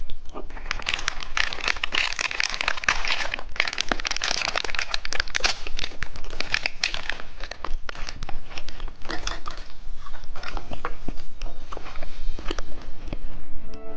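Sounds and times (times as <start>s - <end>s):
plastic packaging crinkling: 0.0s - 13.2s.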